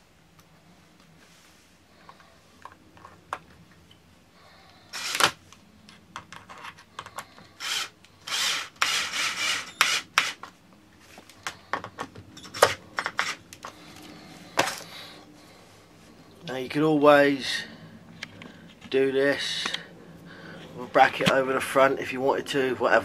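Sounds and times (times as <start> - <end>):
screws being driven: 4.9 - 5.4, 7.6 - 10.5, 12.4 - 13.4
short grinding scraping bursts: 4.9 - 5.4, 7.6 - 10.4
small clicks and knocks: 5.2 - 8.1.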